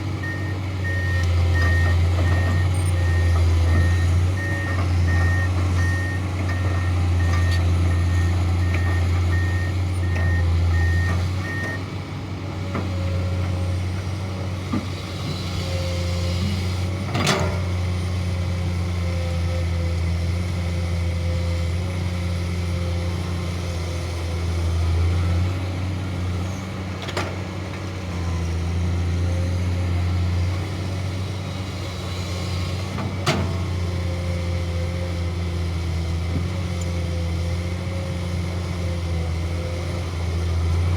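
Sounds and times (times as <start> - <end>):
excavator diesel engine running: 0.0 - 40.9
beeping alarm: 0.2 - 11.8.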